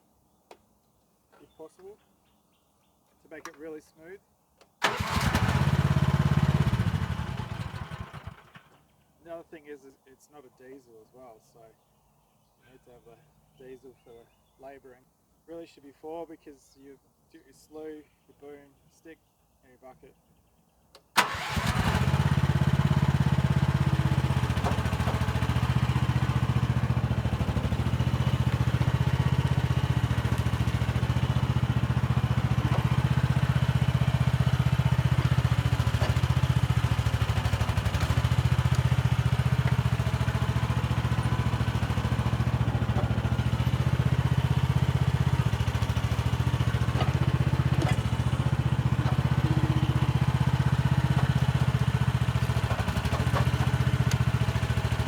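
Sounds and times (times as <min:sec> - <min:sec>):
excavator engine running: 0:04.8 - 0:08.3, 0:21.2 - 0:55.0.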